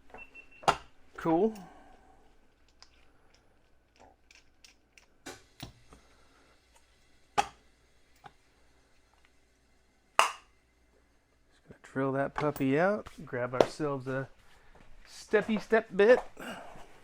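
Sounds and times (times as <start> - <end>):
tools clicking and knocking: 2.6 - 5.8.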